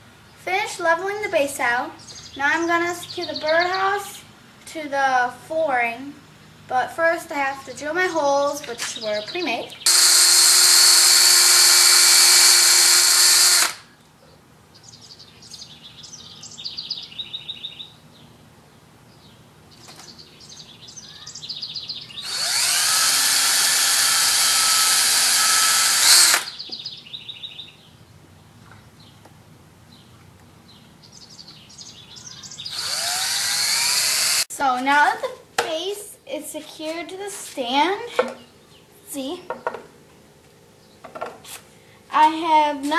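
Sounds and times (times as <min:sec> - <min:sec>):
birds chirping faintly: 0:00.2 - 0:04.2, 0:13.9 - 0:23.4, 0:26.2 - 0:34.8
electric drill driving screws: 0:09.9 - 0:13.8, 0:22.2 - 0:26.6, 0:32.7 - 0:34.5.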